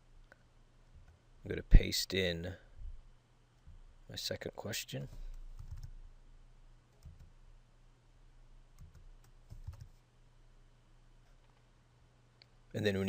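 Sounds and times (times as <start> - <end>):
faint keyboard and mouse clicks: 5.0 - 6.0, 6.9 - 7.4, 8.7 - 10.0.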